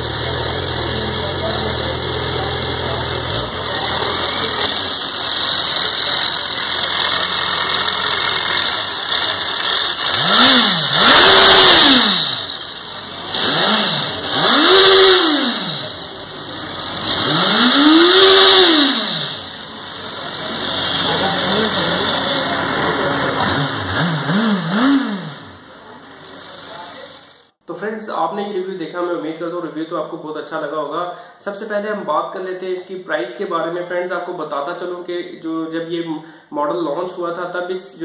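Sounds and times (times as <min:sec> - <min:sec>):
motorcycle engine revving: 0:00.0 - 0:27.6.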